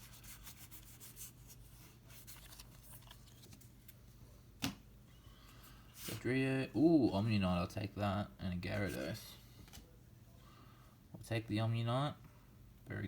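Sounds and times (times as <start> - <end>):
cards rustling and ticking: 0.1 - 4.0.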